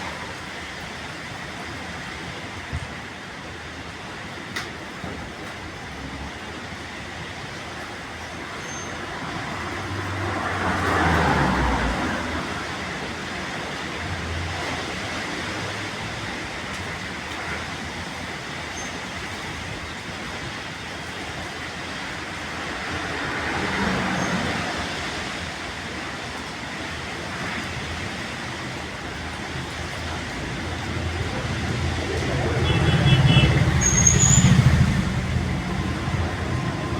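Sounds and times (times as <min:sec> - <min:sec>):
strong wind gusting: 0:27.1 - 0:36.9.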